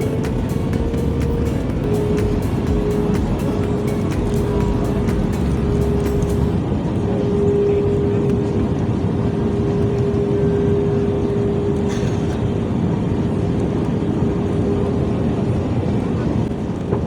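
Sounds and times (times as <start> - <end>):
jet engine and airflow rumble: 0.0 - 17.0.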